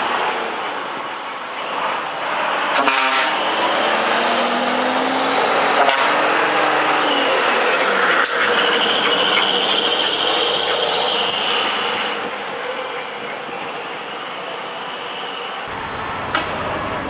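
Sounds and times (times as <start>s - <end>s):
truck engines running: 0.0s - 17.0s
steady high tone: 3.5s - 12.2s.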